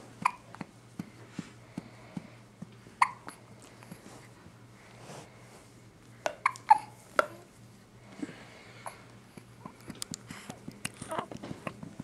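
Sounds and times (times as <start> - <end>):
baby hiccuping: 0.2 - 0.5, 3.0 - 3.4, 6.4 - 7.4.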